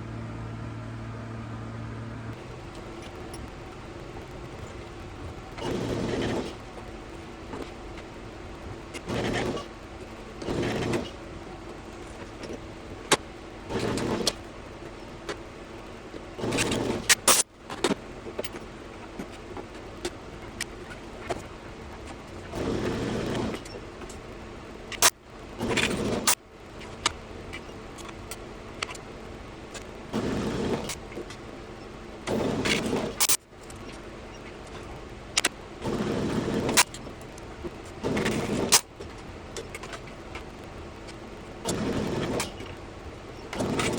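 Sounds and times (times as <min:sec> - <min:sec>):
low steady hum: 0:00.0 - 0:43.9
power tool motor bursts: 0:02.4 - 0:06.6, 0:08.9 - 0:09.7, 0:10.4 - 0:11.2
short bursts of noise: 0:02.4 - 0:29.0, 0:29.6 - 0:43.9.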